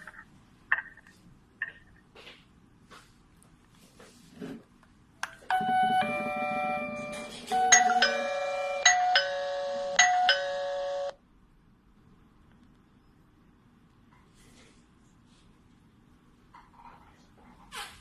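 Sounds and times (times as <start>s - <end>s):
electronic doorbell chime tune: 5.5s - 11.2s.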